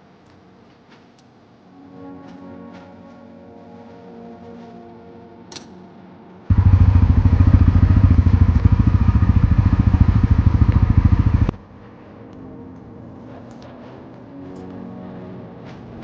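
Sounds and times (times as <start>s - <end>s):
motorcycle engine running at low revs: 6.5s - 11.6s.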